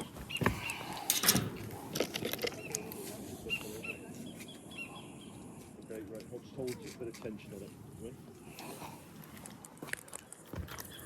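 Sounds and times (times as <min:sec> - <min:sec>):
bird chirping: 0:02.4 - 0:05.6.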